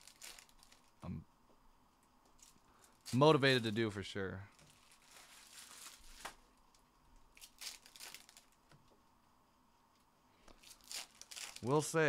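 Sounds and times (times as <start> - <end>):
card wrappers crinkling and tearing: 0.0 - 0.9, 4.5 - 6.5, 7.3 - 8.6, 10.5 - 12.0.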